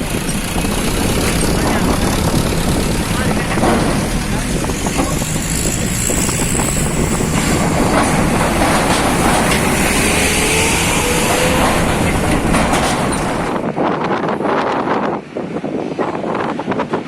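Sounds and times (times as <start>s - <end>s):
metallic clanks: 0.0s - 13.6s
heavy vehicle traffic rumbling: 0.0s - 13.9s.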